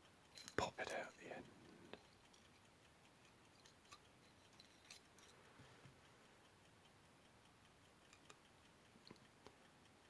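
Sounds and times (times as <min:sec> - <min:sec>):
faint regular ticking: 0:00.0 - 0:10.0.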